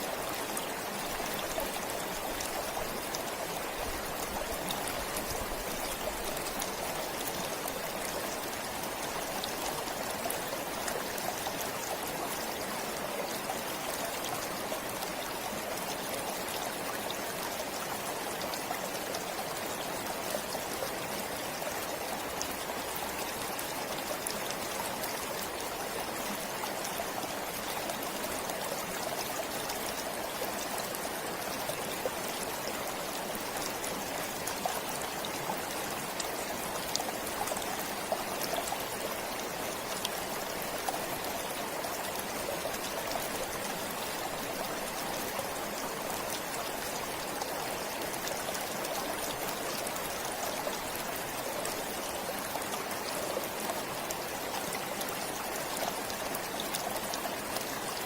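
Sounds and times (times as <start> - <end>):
stream flowing: 0.0 - 58.0.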